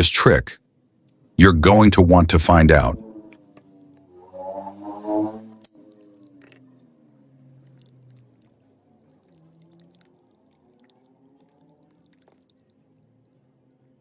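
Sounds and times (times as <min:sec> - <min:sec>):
low droning music tone: 0:02.7 - 0:08.6
faint ticks: 0:05.5 - 0:14.0.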